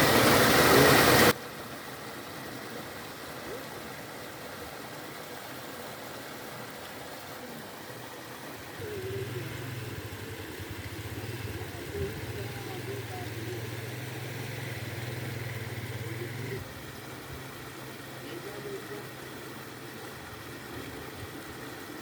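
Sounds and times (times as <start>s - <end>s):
river water rushing: 0.0s - 22.0s
low hum: 8.8s - 16.6s.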